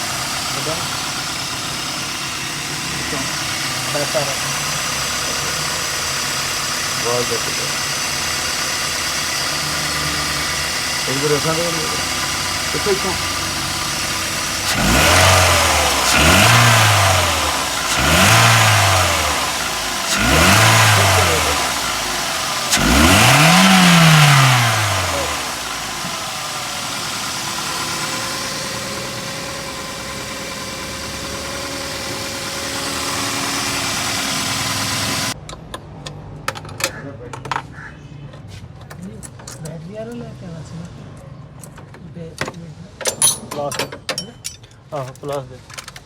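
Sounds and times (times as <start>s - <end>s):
car engine revving and idling: 0.0s - 36.5s.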